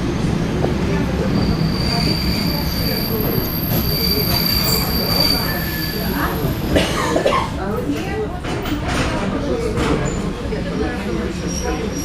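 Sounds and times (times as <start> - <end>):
train wheels rumbling on rails: 0.0 - 12.0
high wheel squeal: 1.2 - 6.7.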